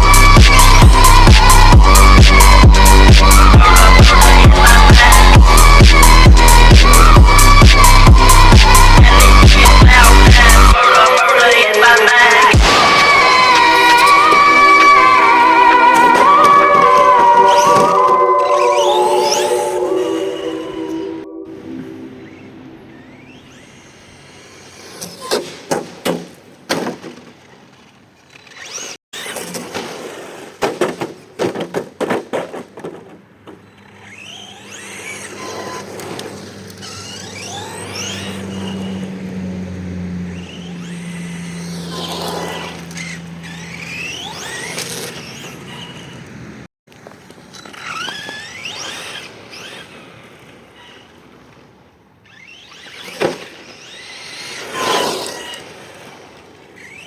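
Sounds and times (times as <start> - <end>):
squealing: 0.0 - 11.2, 12.1 - 25.4, 33.7 - 46.3, 52.2 - 57.0
electric motor whining: 0.0 - 25.3, 33.6 - 46.6, 47.6 - 51.2, 52.3 - 57.0
toy truck hitting and bouncing: 24.4 - 38.9, 40.4 - 46.3, 52.3 - 56.2.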